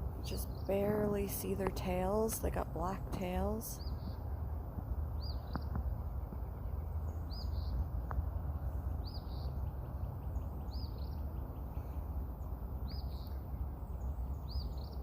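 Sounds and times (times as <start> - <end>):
steady low rumble: 0.0 - 15.0
bird chirping: 5.1 - 15.0.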